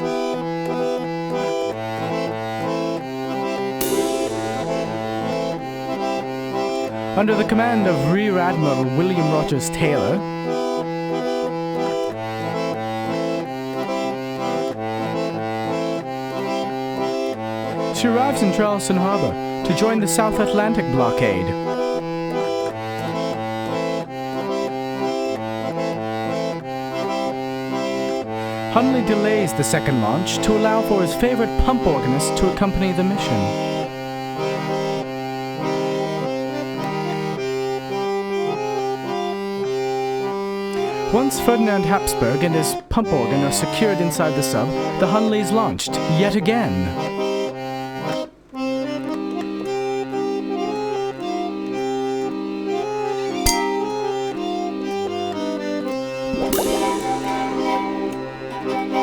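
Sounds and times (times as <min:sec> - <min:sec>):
electric chord organ chords: 0:00.0 - 0:42.3, 0:43.1 - 0:59.0
sudden hiss: 0:03.8 - 0:06.0
two-note bass line: 0:03.8 - 0:08.8, 0:53.4 - 0:54.9, 0:56.2 - 0:59.0.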